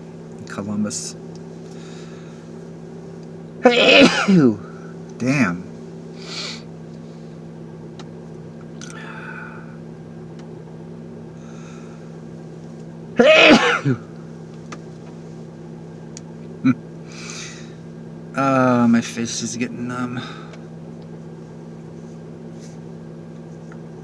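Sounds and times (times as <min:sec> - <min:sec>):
steady low hum: 0:00.0 - 0:24.0
faint breaths: 0:01.7 - 0:02.6, 0:08.9 - 0:09.8
man sneezing: 0:03.6 - 0:04.8, 0:13.2 - 0:14.1.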